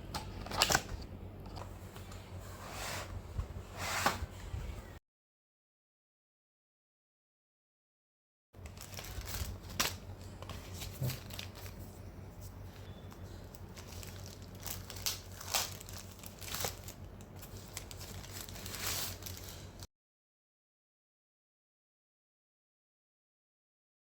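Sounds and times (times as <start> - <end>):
packaging crinkling and rustling: 8.6 - 19.9.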